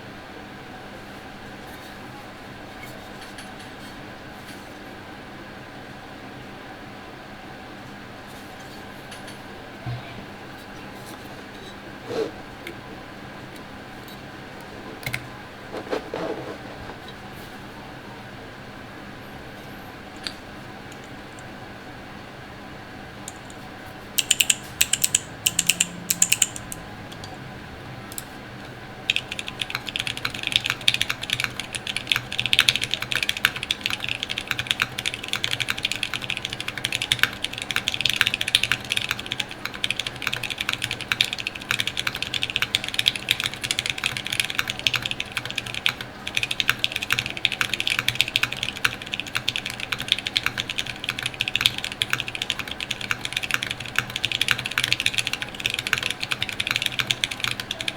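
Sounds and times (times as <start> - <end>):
mechanical keyboard typing: 24.2 - 27.4, 29.1 - 57.9.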